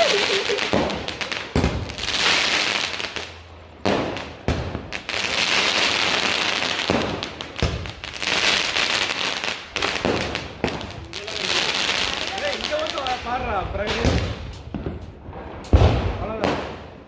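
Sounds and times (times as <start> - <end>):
firecracker bangs: 0.0 - 2.7, 3.8 - 8.0, 9.8 - 16.9
hissing crackle: 0.0 - 3.4.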